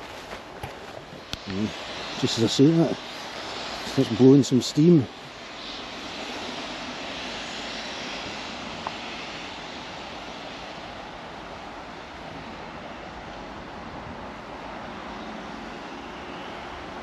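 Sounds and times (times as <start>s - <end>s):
steam locomotive venting steam: 0.0s - 17.0s.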